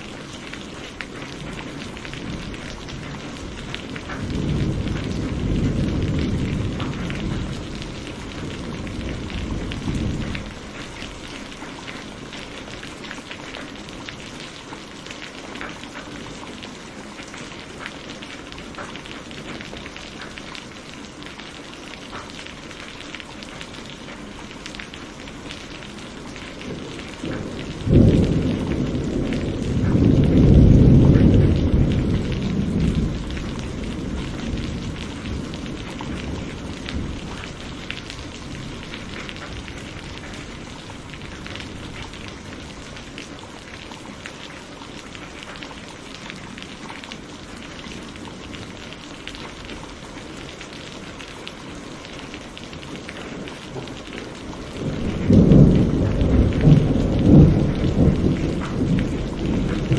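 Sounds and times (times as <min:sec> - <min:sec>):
thunder rumbling: 0:00.0 - 0:12.8, 0:25.2 - 0:44.4, 0:52.3 - 0:59.9
heavy rain falling: 0:00.0 - 0:59.9
thunderclap: 0:01.5 - 0:11.2, 0:26.6 - 0:42.8, 0:54.7 - 0:59.9.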